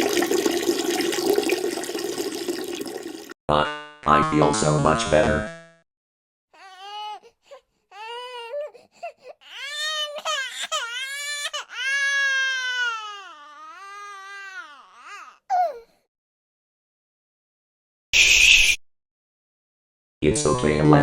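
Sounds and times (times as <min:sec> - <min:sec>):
baby crying: 0:06.5 - 0:15.9.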